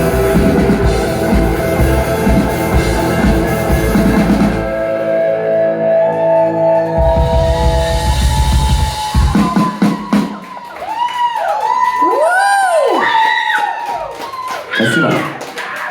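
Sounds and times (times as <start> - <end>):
held electric guitar notes: 0.0 - 10.1
rock band playing: 0.0 - 11.0.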